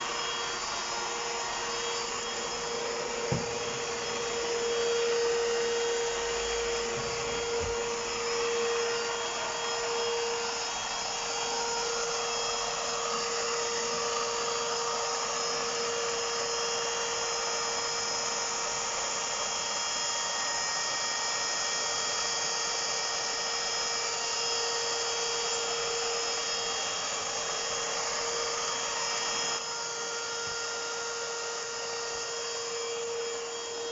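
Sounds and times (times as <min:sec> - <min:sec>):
vacuum cleaner running: 0:00.0 - 0:33.9
short knock: 0:03.3 - 0:03.6.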